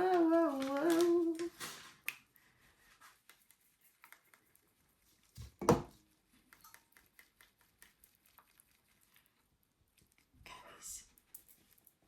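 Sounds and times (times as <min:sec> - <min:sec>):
dull thump on work surface: 0:05.6 - 0:05.9.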